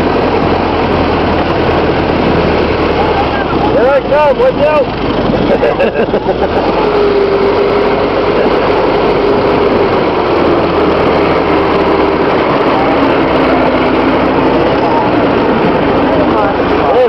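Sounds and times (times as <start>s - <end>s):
snowmobile engine running hard: 0.0s - 17.0s.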